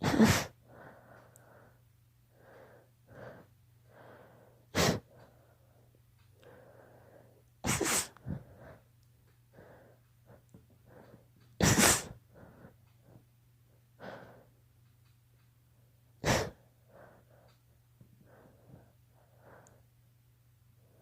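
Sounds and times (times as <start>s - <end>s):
girl sneezing: 0.0s - 0.6s, 7.6s - 8.2s, 11.6s - 12.2s
breathing: 0.6s - 7.5s, 8.2s - 11.4s, 12.3s - 13.2s, 14.0s - 14.6s, 16.6s - 19.9s.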